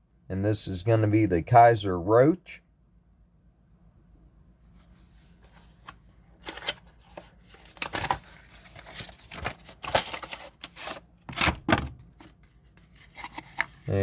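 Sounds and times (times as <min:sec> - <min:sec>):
packaging rustling and scraping: 0:04.7 - 0:14.0.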